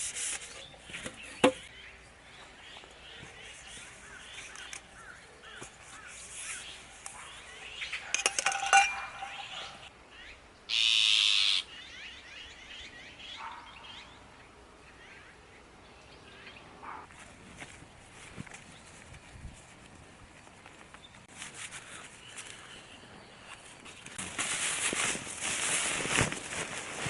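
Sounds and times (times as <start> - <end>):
metallic or glassy clinks: 8.2 - 9.6.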